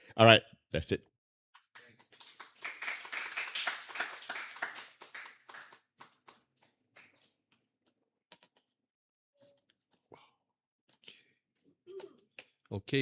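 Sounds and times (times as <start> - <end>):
small group clapping: 1.6 - 7.4.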